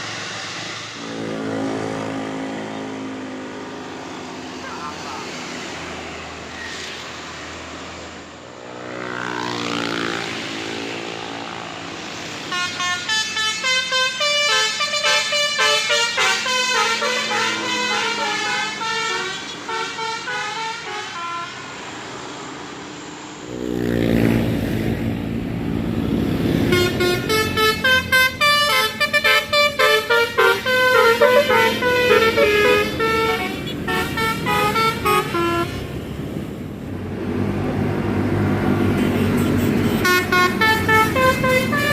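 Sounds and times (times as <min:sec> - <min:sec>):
bus engine: 0:00.0 - 0:41.9
bus air horn melody: 0:01.0 - 0:02.4, 0:12.5 - 0:21.8, 0:26.6 - 0:35.9, 0:38.9 - 0:41.9.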